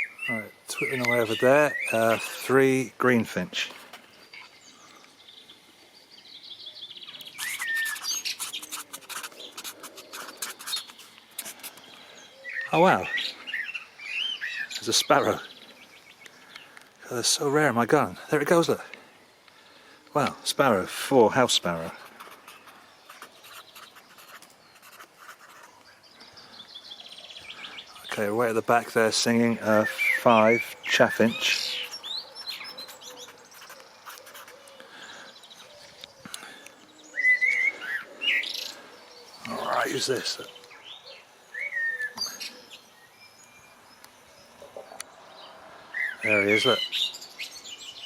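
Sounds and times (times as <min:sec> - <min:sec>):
faint chaffinch song: 0:00.0 - 0:48.0
small birds twittering and chirping: 0:00.0 - 0:48.0
scratchy ticks: 0:07.2 - 0:12.0, 0:22.0 - 0:25.9, 0:32.8 - 0:34.5.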